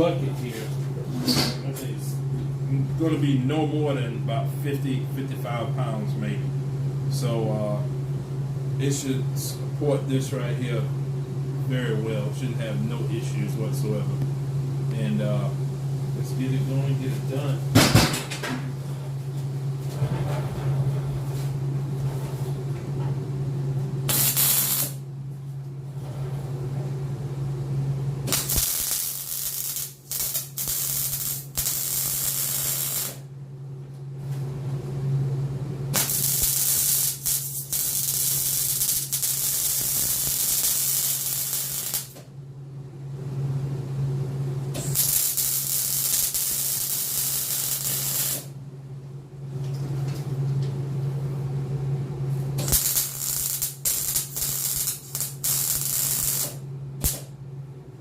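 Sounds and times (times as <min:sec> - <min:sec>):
welder electrical hum: 0:00.0 - 0:58.0
crackling hissing welding arc: 0:24.1 - 0:25.0, 0:28.3 - 0:33.3, 0:35.9 - 0:42.2, 0:44.8 - 0:48.6, 0:52.6 - 0:57.3.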